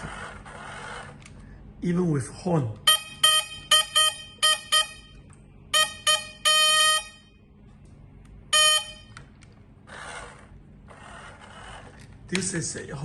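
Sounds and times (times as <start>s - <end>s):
toy car horn beeps: 2.8s - 7.3s, 8.5s - 9.1s.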